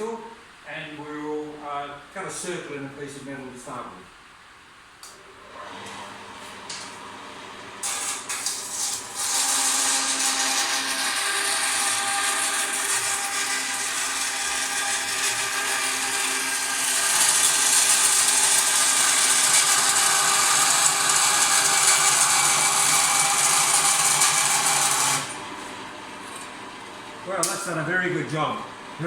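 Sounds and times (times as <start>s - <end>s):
bandsaw cutting metal: 7.8s - 25.6s.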